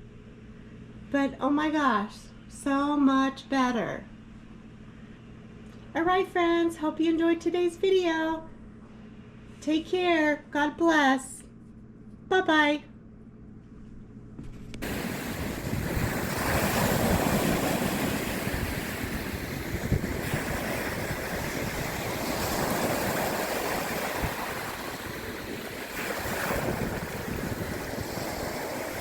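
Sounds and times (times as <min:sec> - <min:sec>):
steady rushing noise: 0:14.8 - 0:29.0.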